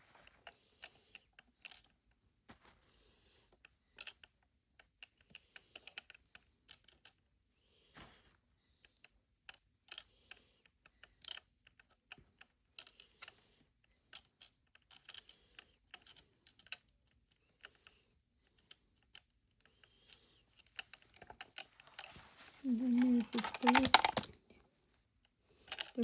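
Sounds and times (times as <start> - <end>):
plastic toy pieces clicking: 4.0 - 4.2, 14.1 - 16.8, 22.7 - 24.4, 25.7 - 26.0.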